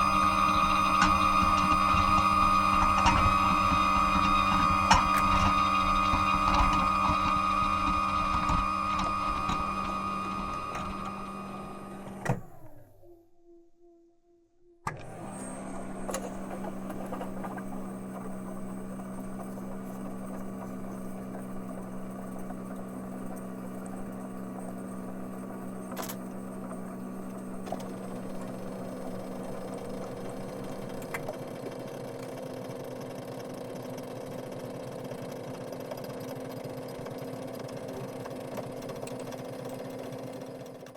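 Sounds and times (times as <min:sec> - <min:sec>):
copy machine whirring: 0:00.0 - 0:12.7, 0:14.9 - 0:33.2.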